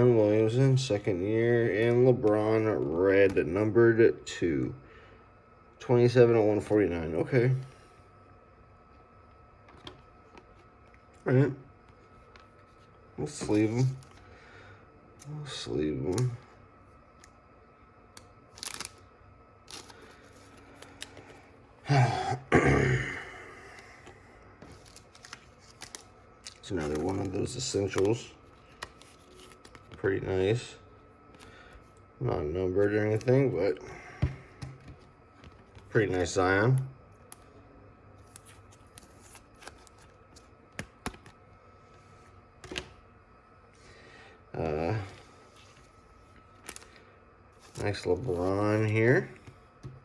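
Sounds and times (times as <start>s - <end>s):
plastic card sleeve rustling: 11.8s - 14.3s, 18.1s - 21.6s, 23.8s - 32.0s, 32.7s - 37.5s, 38.2s - 43.0s, 44.9s - 50.0s
person coughing: 21.9s - 23.4s.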